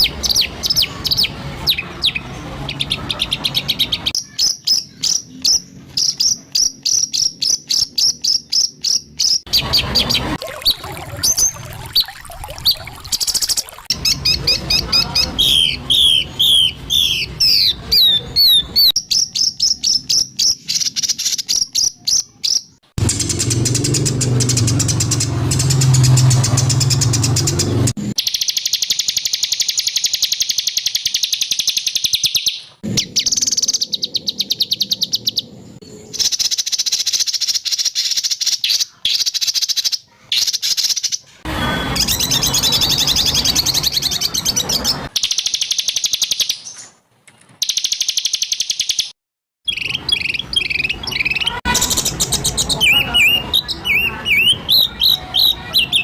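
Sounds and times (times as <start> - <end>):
dry rattling bird trills: 19.0 - 35.5.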